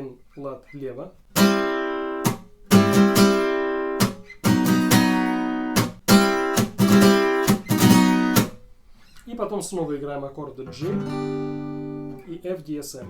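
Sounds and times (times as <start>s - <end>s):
acoustic guitar strumming: 1.3s - 8.7s, 10.7s - 12.3s.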